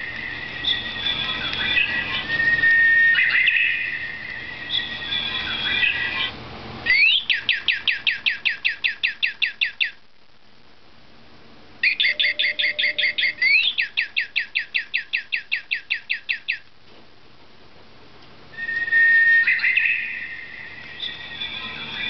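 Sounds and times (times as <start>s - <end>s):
electronic toy birdsong: 0.0s - 10.0s, 11.8s - 16.7s, 18.6s - 22.0s.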